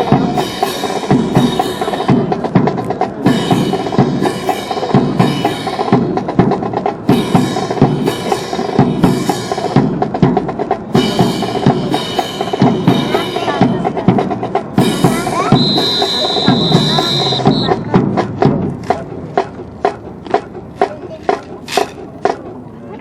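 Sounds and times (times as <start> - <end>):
drum strokes: 0.0 - 23.0
brass band playing: 10.9 - 18.3.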